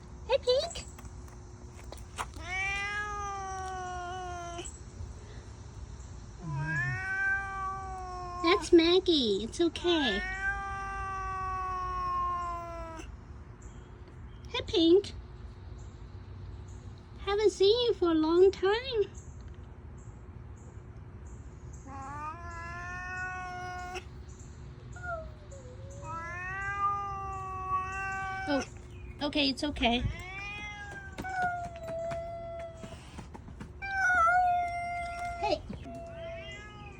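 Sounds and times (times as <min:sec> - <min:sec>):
cat yowling: 0:02.4 - 0:04.8, 0:06.4 - 0:08.8, 0:10.0 - 0:13.1, 0:21.8 - 0:24.1, 0:25.0 - 0:28.8, 0:30.0 - 0:33.2, 0:33.8 - 0:36.9
cat growling: 0:06.4 - 0:08.7, 0:25.0 - 0:28.8.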